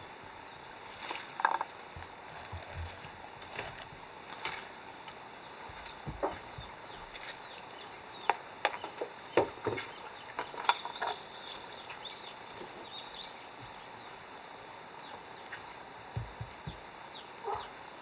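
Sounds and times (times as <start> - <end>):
insects chirring: 0.0 - 18.0
short knocks and taps: 5.7 - 6.8, 16.1 - 16.9
low thumps: 16.1 - 17.0.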